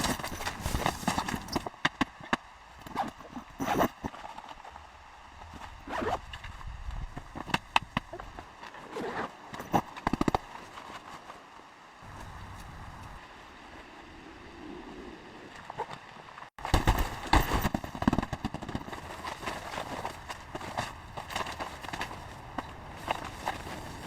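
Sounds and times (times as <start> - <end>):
things being handled: 0.0 - 1.8.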